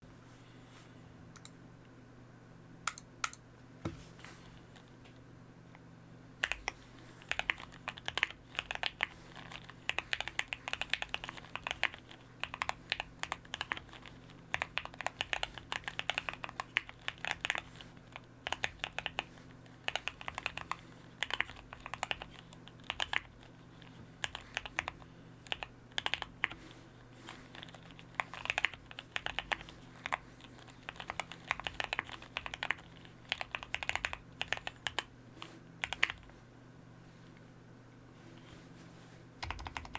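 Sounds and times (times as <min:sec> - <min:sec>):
typing on mechanical keyboard: 0:06.4 - 0:23.4, 0:24.2 - 0:26.6, 0:27.5 - 0:35.1, 0:35.8 - 0:36.3, 0:39.4 - 0:39.9.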